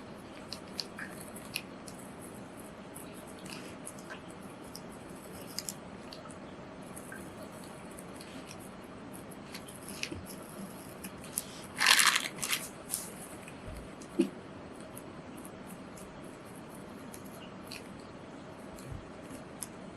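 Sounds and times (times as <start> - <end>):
paper clicks and rustles: 9.4 - 13.6
loud crunching paper cut: 11.4 - 13.1.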